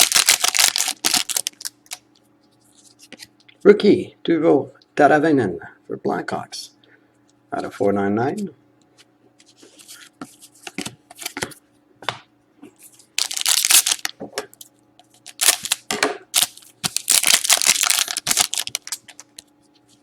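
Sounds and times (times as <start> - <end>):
card wrapper tearing and crinkling: 0.0 - 2.0, 13.2 - 14.1, 15.2 - 19.4.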